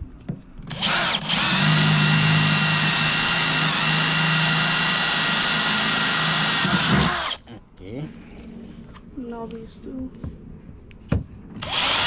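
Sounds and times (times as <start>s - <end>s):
power drill whining: 0.7s - 7.4s, 11.6s - 12.0s.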